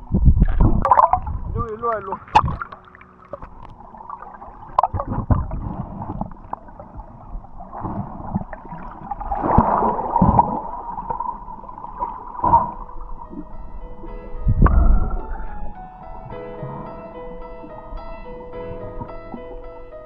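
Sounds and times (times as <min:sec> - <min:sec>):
water gurgling and sloshing: 0:00.0 - 0:20.0
low thuds: 0:09.5 - 0:20.0.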